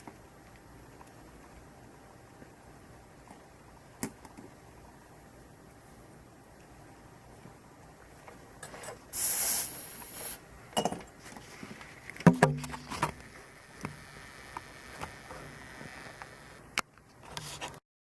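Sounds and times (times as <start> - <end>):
rustling hiss: 9.1 - 10.5, 12.9 - 16.7.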